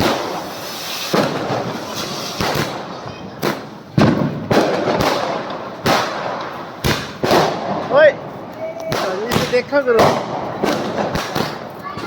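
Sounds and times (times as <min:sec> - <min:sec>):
firecrackers banging: 0:00.0 - 0:12.0
continuous crackling: 0:04.4 - 0:12.0.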